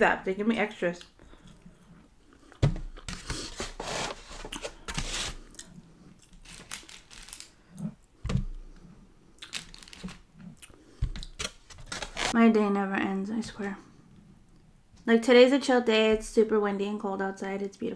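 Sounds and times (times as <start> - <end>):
paper packaging crinkling: 3.1 - 5.7, 6.3 - 7.6, 9.5 - 10.3, 11.2 - 12.4.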